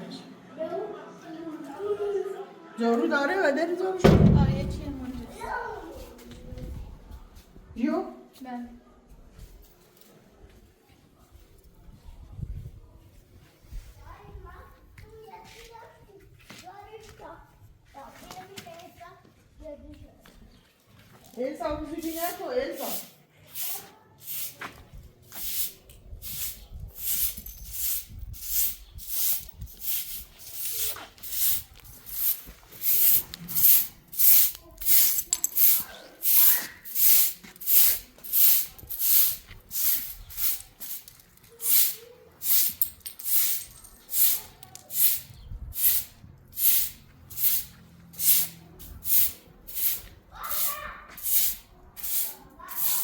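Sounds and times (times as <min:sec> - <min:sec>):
broom sweeping: 0:21.9 - 0:53.0.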